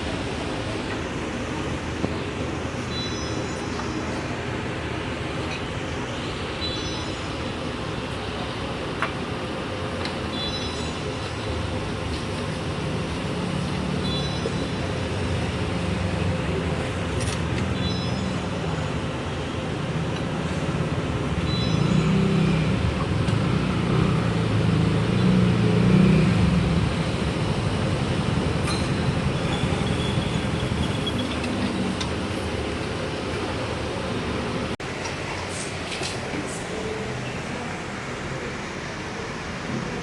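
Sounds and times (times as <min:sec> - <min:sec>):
street traffic rumble: 0:00.0 - 0:40.0
louder vehicle passing: 0:20.6 - 0:32.7.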